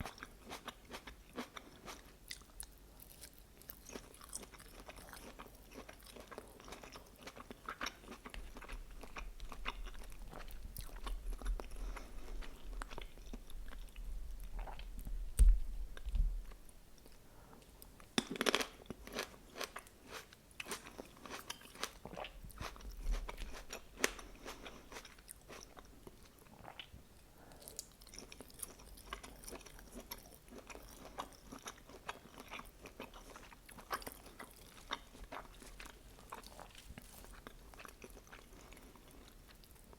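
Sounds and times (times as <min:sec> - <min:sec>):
biting and chewing crunchy food: 0:00.0 - 0:17.2, 0:18.2 - 0:27.0, 0:27.6 - 0:39.9.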